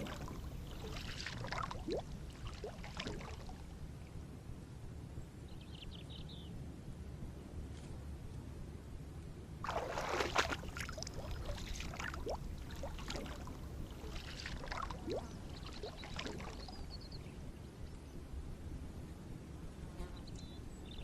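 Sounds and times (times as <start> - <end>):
water splashing and gurgling: 0.0 - 3.7, 9.6 - 17.1
low steady rumble: 0.0 - 21.0.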